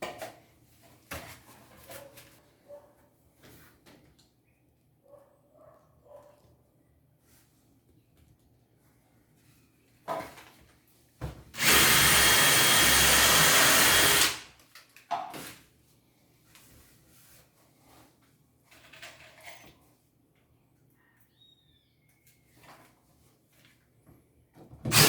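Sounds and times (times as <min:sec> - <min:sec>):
power drill running: 0:11.6 - 0:14.5.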